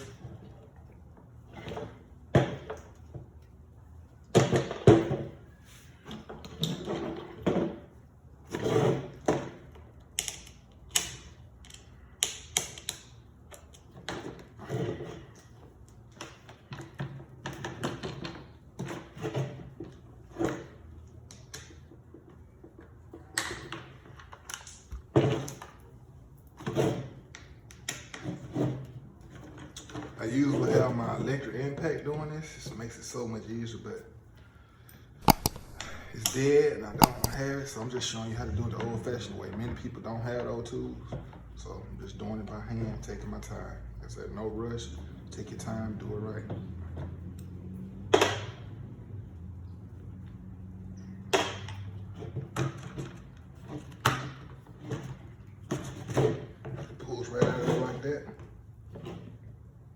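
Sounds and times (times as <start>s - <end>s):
hand tools scraping: 35.2s - 37.8s
small hammer tapping screws: 35.2s - 37.8s.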